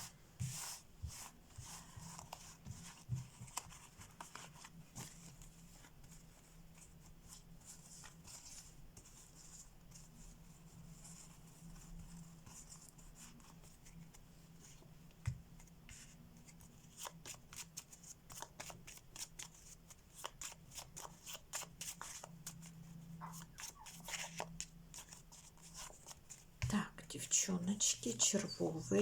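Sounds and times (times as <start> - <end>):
playing cards shuffling: 23.3 - 26.2.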